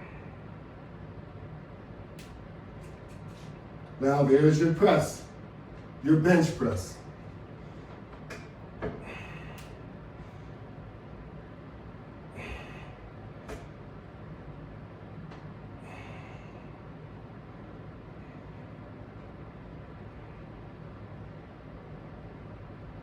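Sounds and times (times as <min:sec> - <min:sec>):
steady low hum: 0:00.0 - 0:23.0
person exhaling forcefully: 0:09.0 - 0:09.8, 0:12.3 - 0:13.0.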